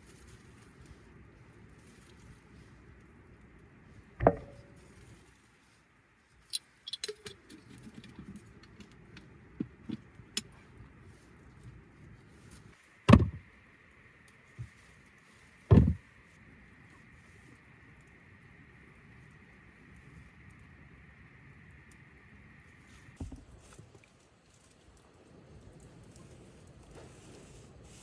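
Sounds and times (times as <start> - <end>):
heavy thuds: 4.2 - 4.8, 13.1 - 13.4, 15.7 - 16.0
light clicks and clinks: 6.4 - 9.3.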